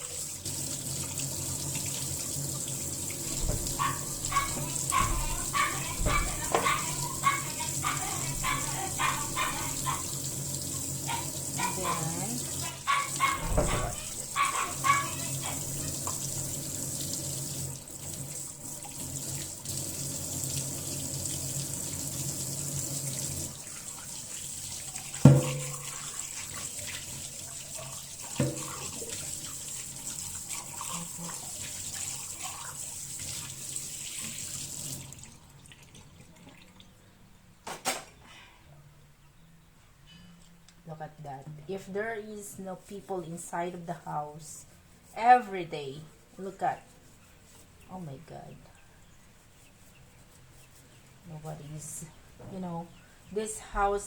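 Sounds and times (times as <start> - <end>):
tap water running into sink: 0.0 - 36.8
kitchenware clanking: 3.2 - 10.1, 25.1 - 26.2.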